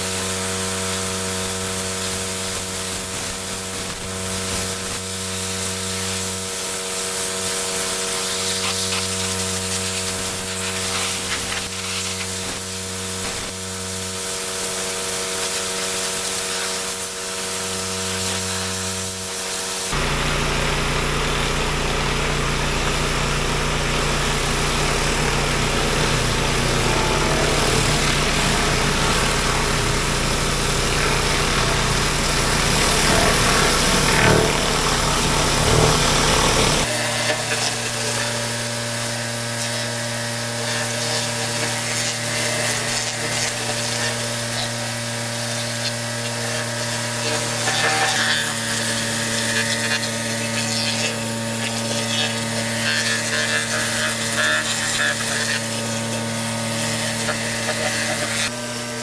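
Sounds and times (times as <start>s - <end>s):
pressure washer motor hum: 0.0s - 59.0s
water spray hissing: 7.4s - 13.6s, 22.7s - 36.9s.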